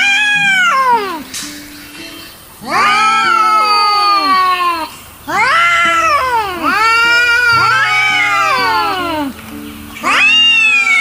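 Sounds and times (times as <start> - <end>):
cats yowling: 0.0 - 1.4, 2.6 - 9.4, 10.0 - 11.0.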